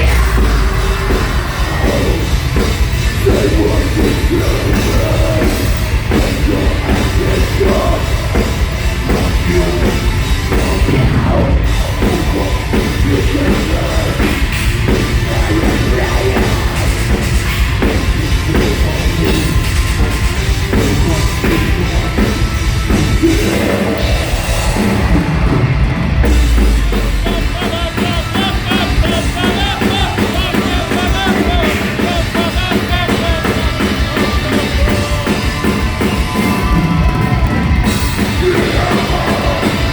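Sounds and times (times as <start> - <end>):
shouted vocals: 0.0 - 25.8, 26.8 - 39.9
deep low hit: 0.0 - 28.3
fast guitar lead line: 0.0 - 39.9
metal band playing loud and fast: 0.0 - 39.9.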